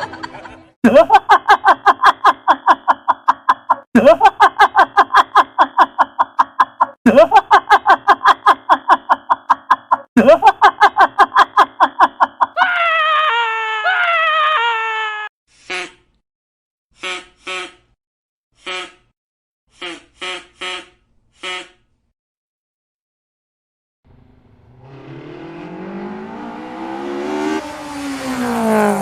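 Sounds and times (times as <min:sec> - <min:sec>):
cartoon laugh sound effect: 0:00.0 - 0:14.1
descending pitched notes: 0:24.1 - 0:29.0.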